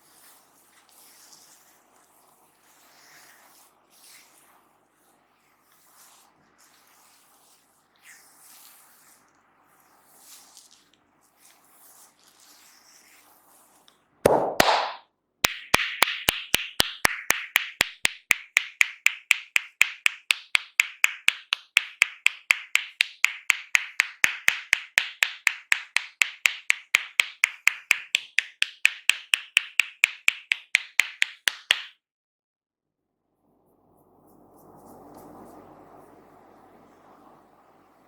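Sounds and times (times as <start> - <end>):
hands tapping head: 14.3 - 32.0.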